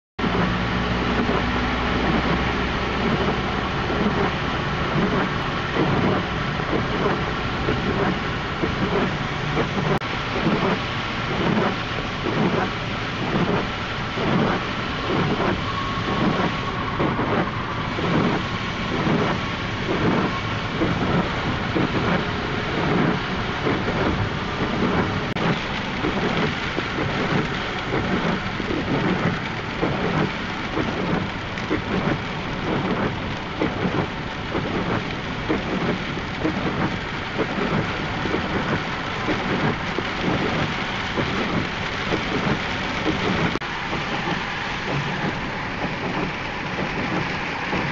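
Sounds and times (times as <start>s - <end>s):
heavy rain beating on a car: 0.2s - 47.9s
road noise: 0.2s - 47.9s.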